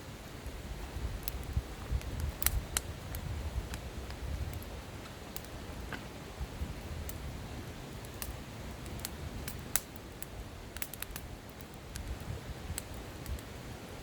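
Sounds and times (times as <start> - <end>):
campfire crackling and popping: 0.1 - 14.0.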